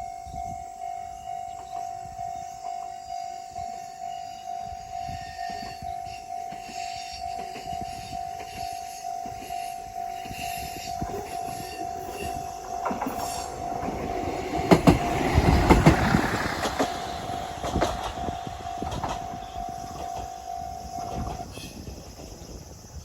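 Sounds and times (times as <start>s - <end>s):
level crossing warning bell: 0.0s - 21.8s
train wheels clacking over rail joints: 5.4s - 22.6s.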